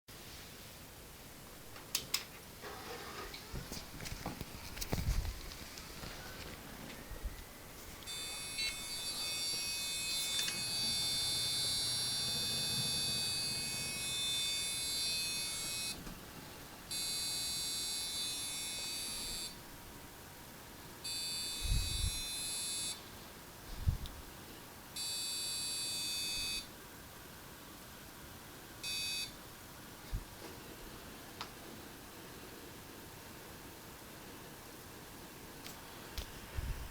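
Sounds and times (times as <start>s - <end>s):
high-pitched electrical buzz: 7.3s - 16.0s, 16.9s - 19.6s, 21.1s - 23.0s.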